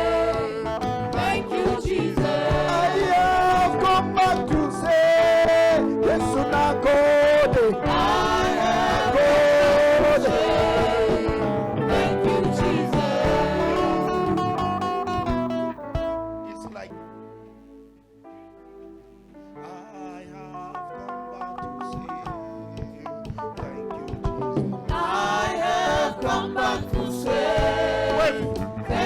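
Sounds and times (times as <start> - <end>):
gospel singing: 0.0 - 15.8, 24.8 - 29.0
steady beat: 0.0 - 16.3, 21.6 - 29.0
guitar: 0.0 - 29.0.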